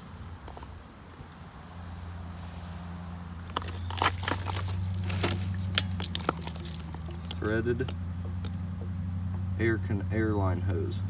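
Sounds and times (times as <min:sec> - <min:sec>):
hands unscrewing drain plug: 0:03.4 - 0:07.5.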